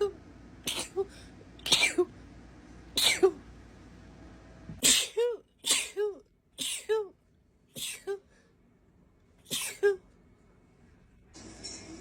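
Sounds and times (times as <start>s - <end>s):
woman sneezing: 3.0s - 3.4s, 4.8s - 7.1s, 7.8s - 8.2s, 9.5s - 10.0s.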